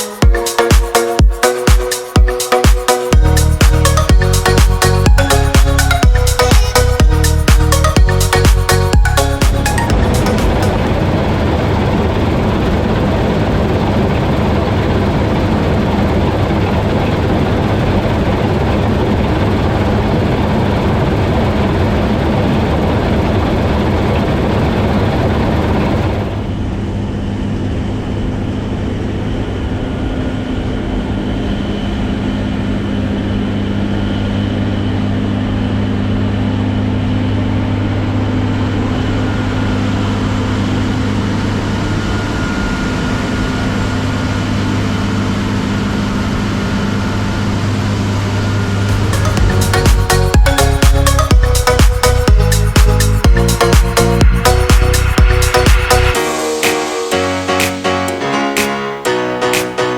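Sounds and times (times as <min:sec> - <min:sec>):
loud rushing noise: 0:00.0 - 0:19.9, 0:48.2 - 0:59.9
heavy machinery engine running: 0:08.2 - 0:13.1, 0:46.4 - 0:52.3.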